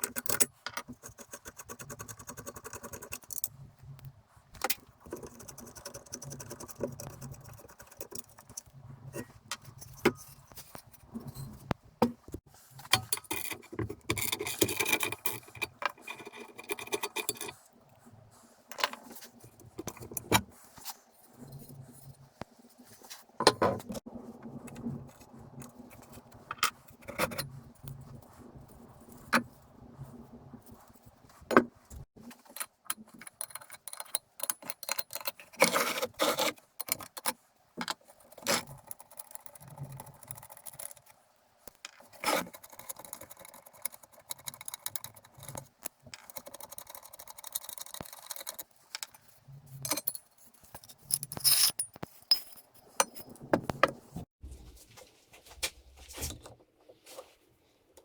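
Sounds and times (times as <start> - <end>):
metal parts and tools clinking: 49.8 - 54.0.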